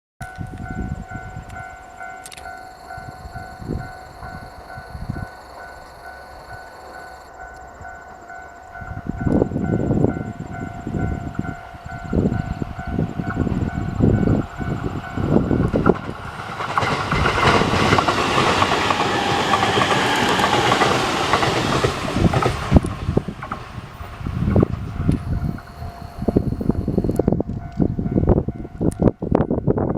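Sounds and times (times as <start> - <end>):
level crossing warning bell: 0.2 - 15.8, 24.9 - 29.9
train rumble: 0.2 - 29.9
train wheels clattering: 11.0 - 27.9.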